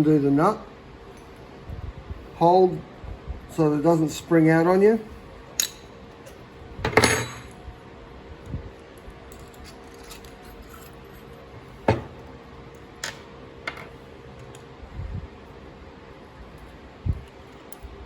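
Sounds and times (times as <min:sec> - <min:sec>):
metal parts clinking: 0:09.3 - 0:11.4.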